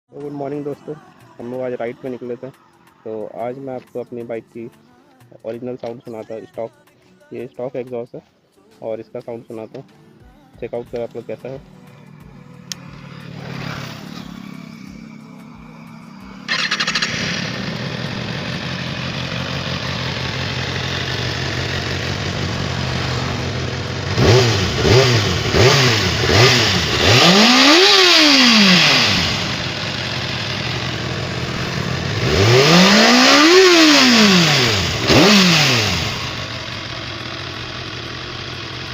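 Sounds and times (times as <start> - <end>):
motorcycle engine idling and revving: 10.6 - 38.9.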